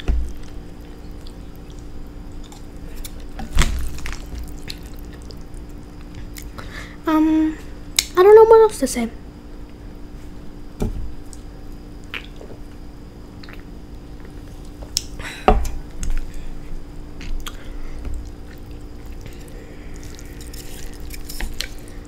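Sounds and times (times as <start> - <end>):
person chewing noodles: 0.2 - 6.6, 17.2 - 22.0
mouth clicks and smacks: 12.0 - 12.5, 13.4 - 13.7, 17.2 - 17.6.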